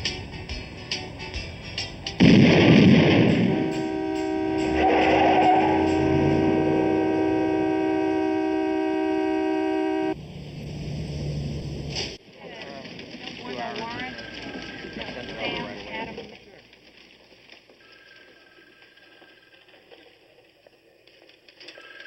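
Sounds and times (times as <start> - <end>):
light rhythmic ticking music: 0.0 - 2.2
loud explosion-like blast: 2.2 - 4.0
held chord: 3.0 - 10.2.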